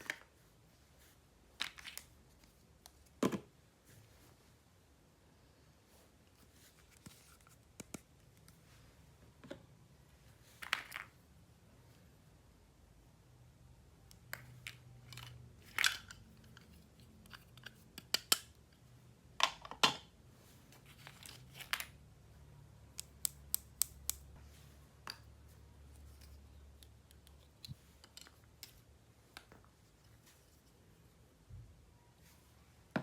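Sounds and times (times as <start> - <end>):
plastic pieces clicking and tapping: 14.1 - 18.7.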